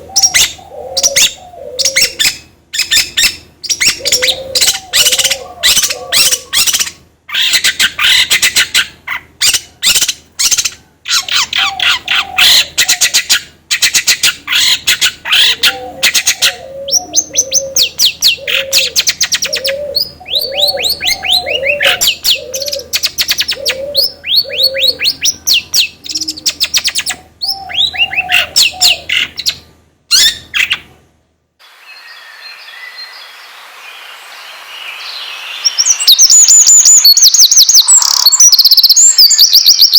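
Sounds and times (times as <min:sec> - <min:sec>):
lower repeated bird call: 0:00.0 - 0:30.9, 0:31.6 - 0:39.9
songbirds chirping and trilling: 0:00.0 - 0:39.9
faint hiss: 0:31.6 - 0:36.7.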